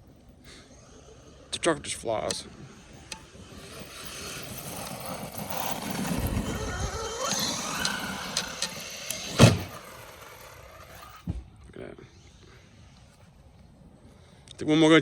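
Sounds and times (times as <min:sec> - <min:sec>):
electric motor whining: 0:00.4 - 0:14.2
toy truck landing thud: 0:03.1 - 0:11.5.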